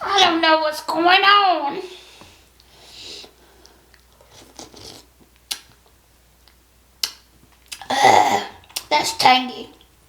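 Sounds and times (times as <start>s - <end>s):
mouth sounds of eating: 2.6s - 9.9s
small mouth clicks: 3.9s - 5.8s, 6.4s - 7.9s.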